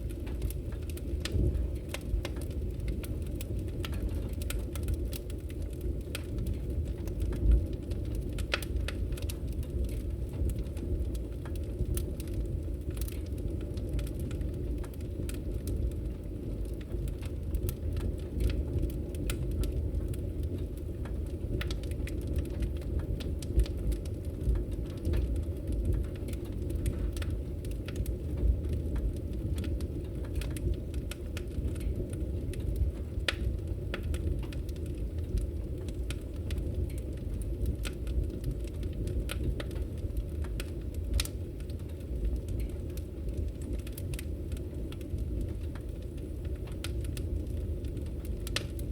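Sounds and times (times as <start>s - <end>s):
fire burning in a fireplace: 0.0s - 48.9s.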